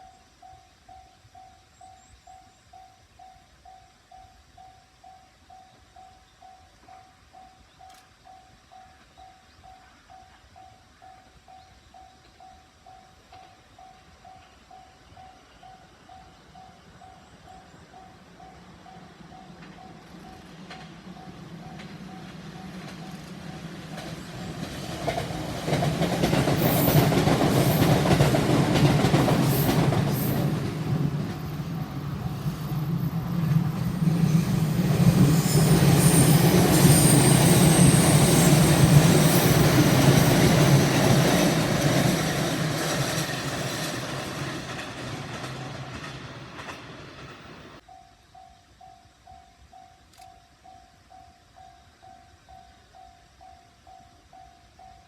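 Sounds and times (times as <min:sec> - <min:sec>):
electric train passing: 0:00.0 - 0:55.0
faint high wheel squeal: 0:33.8 - 0:41.4.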